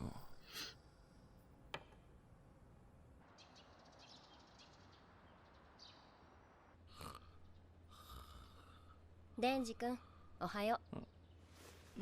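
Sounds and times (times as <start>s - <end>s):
small birds chirping: 3.2s - 12.0s.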